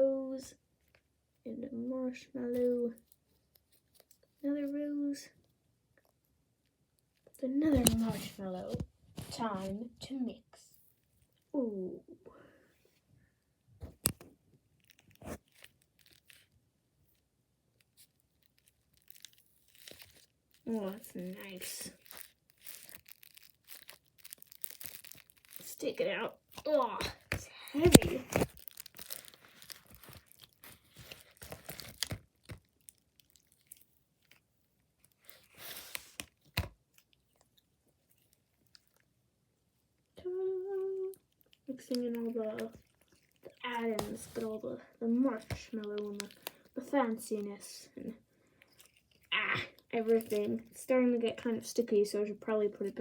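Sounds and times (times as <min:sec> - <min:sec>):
slime squishing by hand: 0:07.6 - 0:09.7, 0:17.8 - 0:39.0, 0:40.7 - 0:46.8
sticky crackles and pops: 0:13.8 - 0:16.5, 0:17.8 - 0:34.4, 0:45.3 - 0:46.7.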